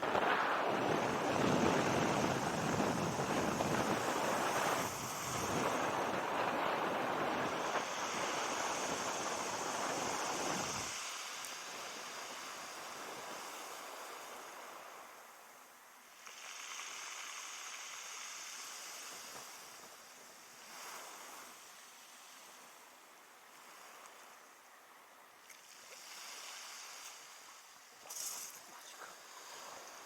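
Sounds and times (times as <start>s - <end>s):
wind on microphone: 0.0s - 15.2s
waves washing on beach: 0.0s - 30.0s.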